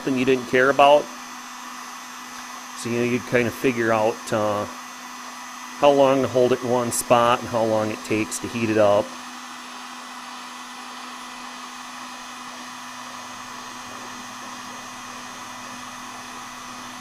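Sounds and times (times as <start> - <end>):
heat gun blowing: 0.0 - 17.0.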